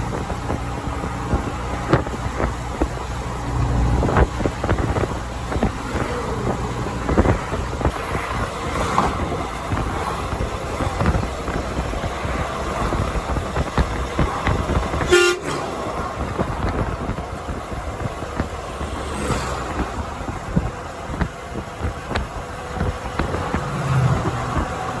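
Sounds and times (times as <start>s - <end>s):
truck engine and road rumble: 0.0s - 25.0s
truck horn toot: 14.9s - 16.0s.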